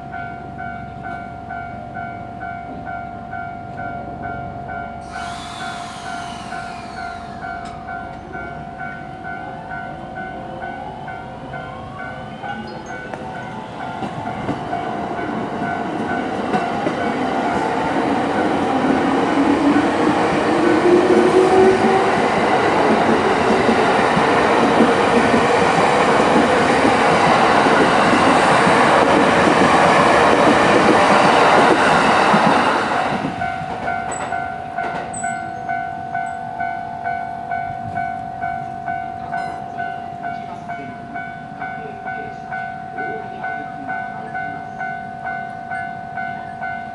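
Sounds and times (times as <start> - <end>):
electric train running past: 0.0 - 46.9
level-crossing warning bell: 0.0 - 46.9.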